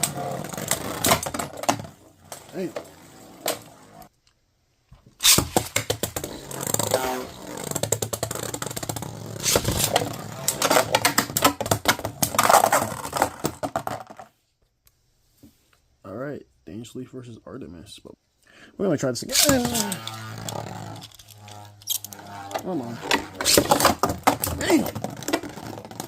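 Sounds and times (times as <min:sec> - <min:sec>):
spinning tops clashing: 0:19.3 - 0:24.6.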